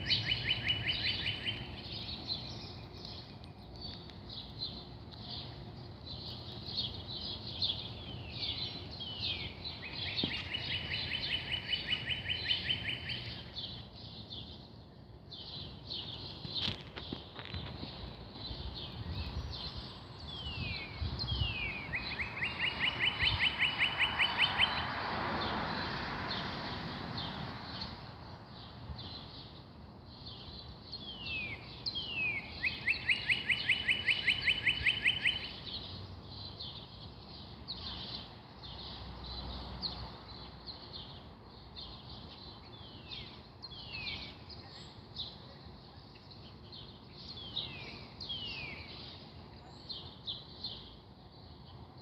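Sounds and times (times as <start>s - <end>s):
birds chirping: 0.0s - 52.0s
songbird singing trill: 0.0s - 52.0s.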